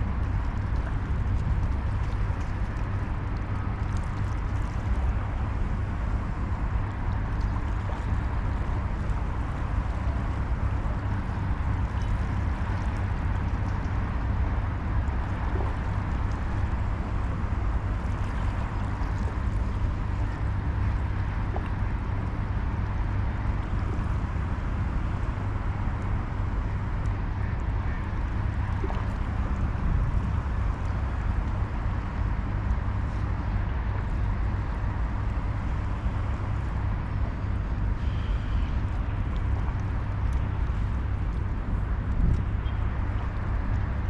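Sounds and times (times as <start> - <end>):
wind buffeting microphone: 28.2 - 32.3, 39.0 - 44.0.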